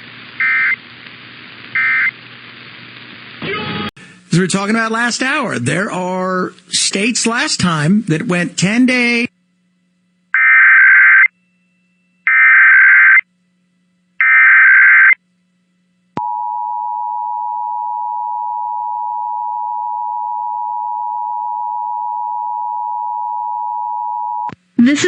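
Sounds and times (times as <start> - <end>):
alert data tone bursts: 0.4 - 0.8, 1.8 - 2.1, 12.3 - 13.2, 14.2 - 15.2.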